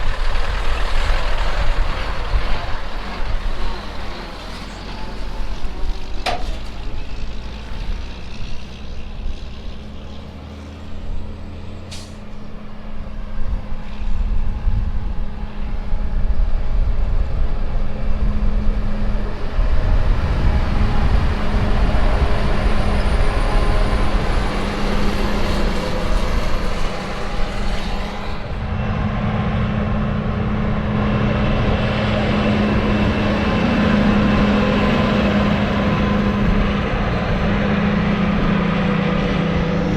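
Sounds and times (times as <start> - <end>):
heavy diesel machinery running: 0.0 - 39.9.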